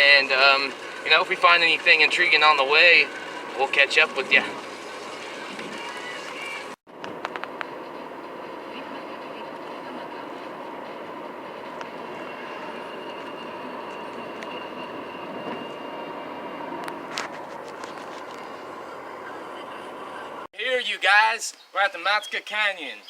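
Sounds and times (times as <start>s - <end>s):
car driving road noise: 0.0s - 14.5s, 16.6s - 20.5s.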